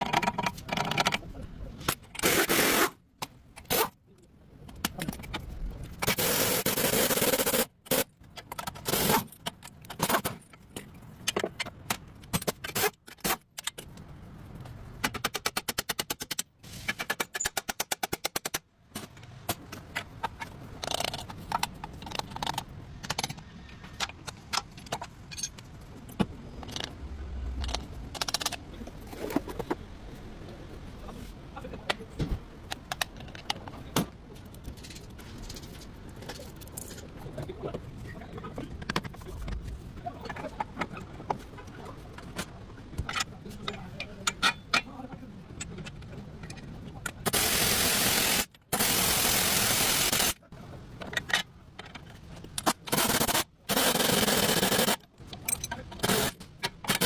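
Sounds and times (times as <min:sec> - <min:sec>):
metal tools clanking and scraping: 0:19.0 - 0:25.7, 0:43.1 - 0:44.9, 0:55.4 - 0:57.0.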